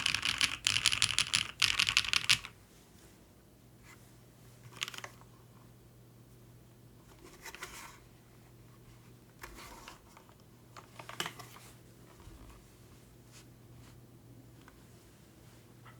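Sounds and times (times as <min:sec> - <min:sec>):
mechanical keyboard typing: 0:00.0 - 0:02.5.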